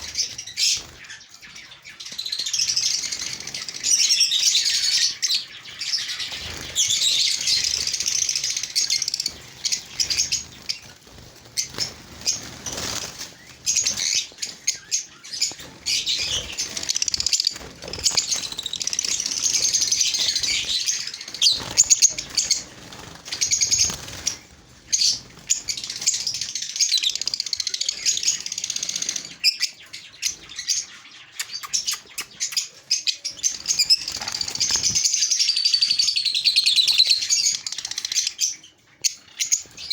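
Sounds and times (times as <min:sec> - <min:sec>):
wings fluttering: 0:00.0 - 0:01.3, 0:02.1 - 0:29.5, 0:33.4 - 0:35.4
birds twittering: 0:00.0 - 0:39.9.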